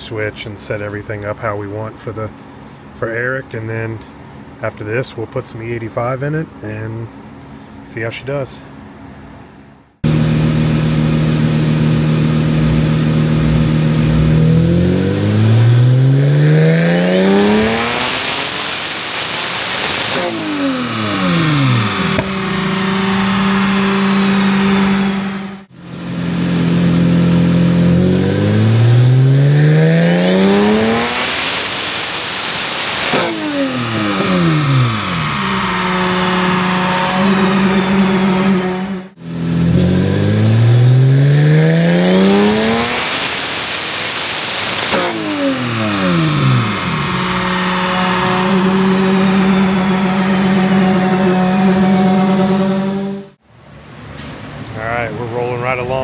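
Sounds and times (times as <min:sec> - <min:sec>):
car engine revving on dyno: 0:10.0 - 0:53.4.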